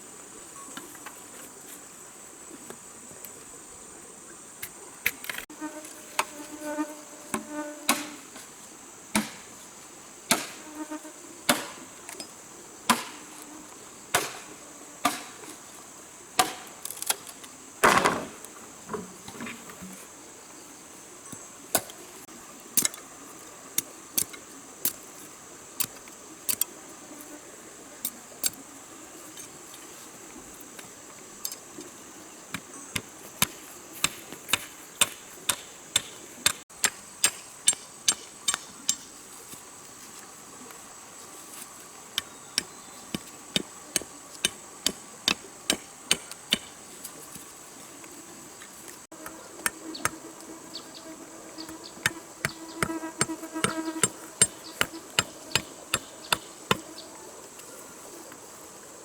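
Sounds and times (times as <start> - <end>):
rainforest insects droning: 0.0 - 59.0
tool striking: 52.0 - 56.8.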